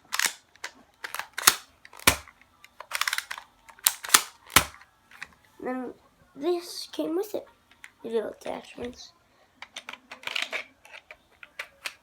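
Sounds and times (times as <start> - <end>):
plastic toy blaster clicks: 0.0 - 4.8, 9.8 - 12.0.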